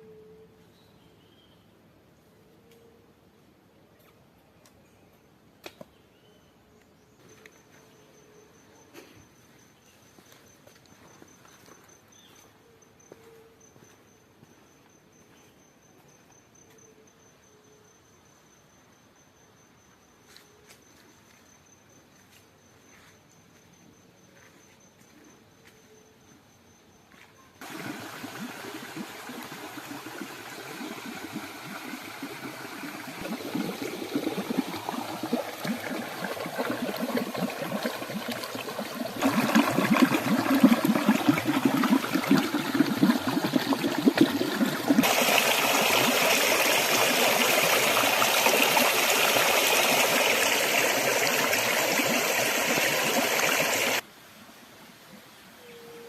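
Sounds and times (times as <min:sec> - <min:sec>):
stream splashing over stones: 0:27.6 - 0:54.0.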